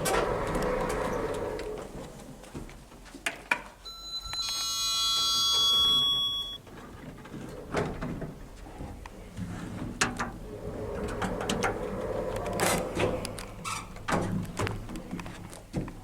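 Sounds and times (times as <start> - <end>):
high-pitched lift chime: 3.9 - 6.6.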